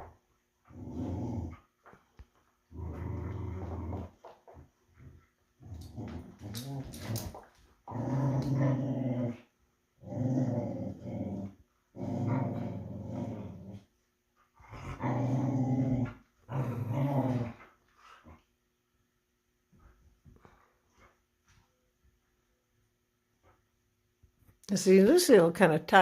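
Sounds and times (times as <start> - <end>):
dog growling: 0.6 - 1.7, 2.7 - 13.9, 14.6 - 18.4.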